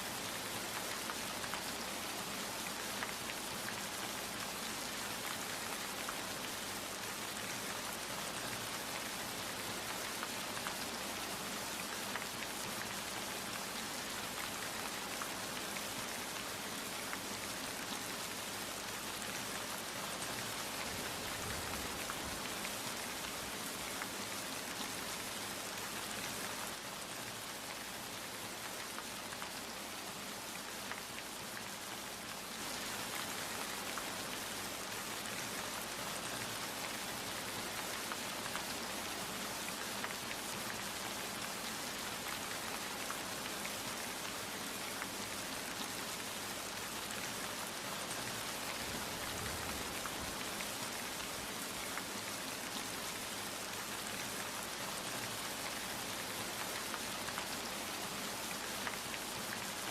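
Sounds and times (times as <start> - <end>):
steady rain falling: 0.0 - 59.9
raindrops ticking on a surface: 0.1 - 59.9.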